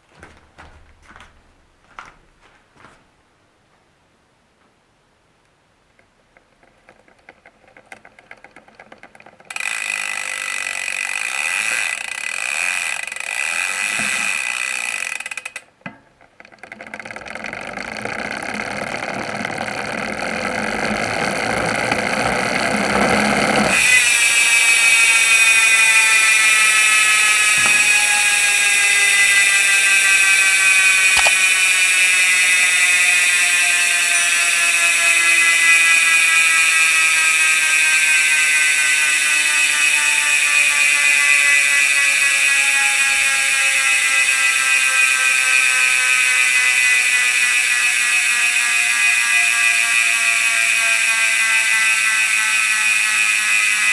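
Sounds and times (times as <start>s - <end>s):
bicycle freehub buzzing: 6.6s - 53.9s
rough rolling noise: 16.2s - 32.4s.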